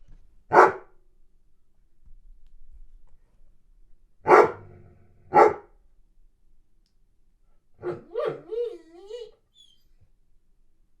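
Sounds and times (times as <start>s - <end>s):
dog barking: 0.5s - 0.9s, 4.3s - 5.7s, 7.8s - 8.6s
dog whining: 7.8s - 9.8s.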